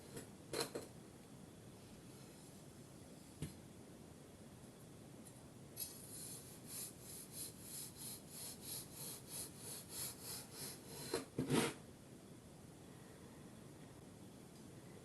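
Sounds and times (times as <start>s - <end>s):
tool scraping sand: 10.3s - 11.8s.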